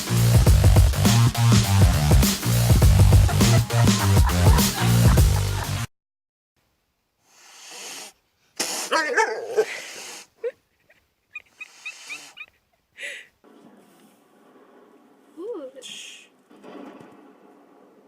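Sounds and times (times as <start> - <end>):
pet breathy noise: 7.2 - 9.0, 11.4 - 13.3.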